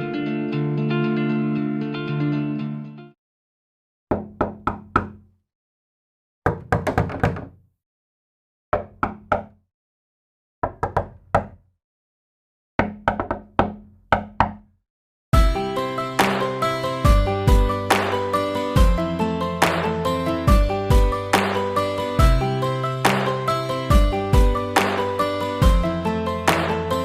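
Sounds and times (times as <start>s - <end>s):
door knocking: 4.1s - 5.2s, 6.5s - 7.6s, 12.8s - 14.7s.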